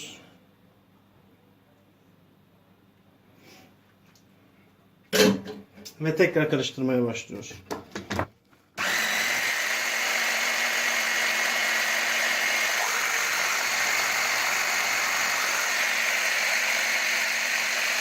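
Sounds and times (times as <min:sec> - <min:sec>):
blender motor whine: 0:08.8 - 0:18.0.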